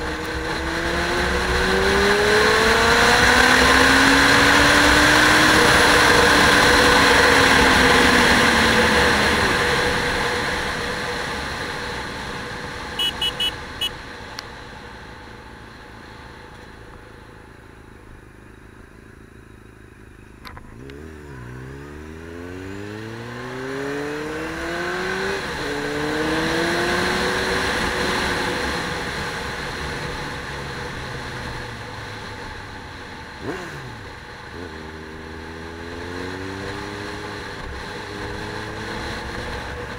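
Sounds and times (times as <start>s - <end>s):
engine accelerating: 0.0s - 11.8s
short high beeps: 13.0s - 14.0s.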